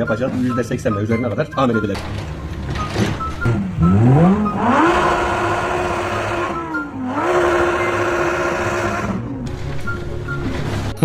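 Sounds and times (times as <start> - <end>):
high-speed motor revving: 2.9 - 9.4.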